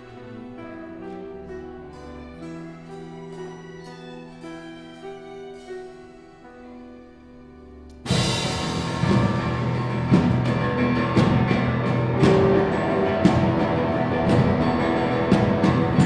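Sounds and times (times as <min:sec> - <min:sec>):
instrumental ensemble music: 0:00.0 - 0:16.0
sharp percussion strikes: 0:08.0 - 0:16.0.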